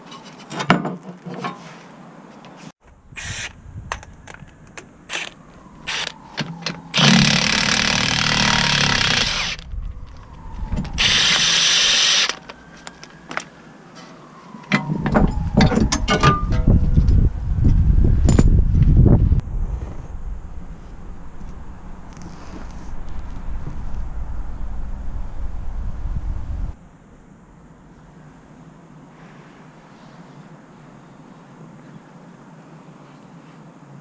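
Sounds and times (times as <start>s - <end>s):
power tool running: 6.9s - 9.6s, 11.0s - 12.4s
low rumble with clatter: 14.9s - 26.8s.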